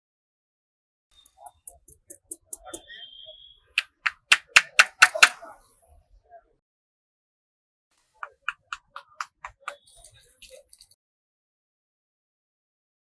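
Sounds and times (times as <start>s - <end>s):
hands slapping a head: 8.2s - 9.8s.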